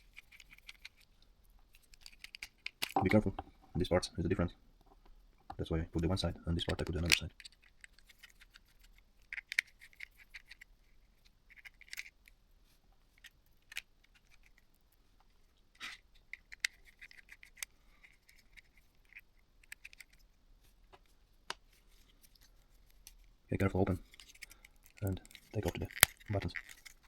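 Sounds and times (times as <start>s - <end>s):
small parts set down: 1.7s - 3.5s, 24.0s - 27.0s
screwdriver clicking and squeaking: 24.1s - 27.0s.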